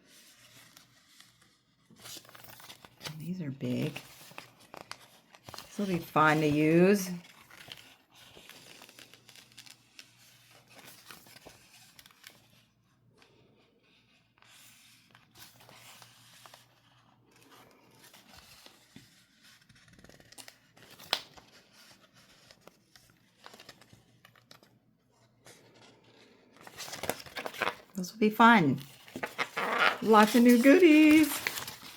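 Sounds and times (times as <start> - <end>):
plastic packaging crinkling: 26.6 - 31.9.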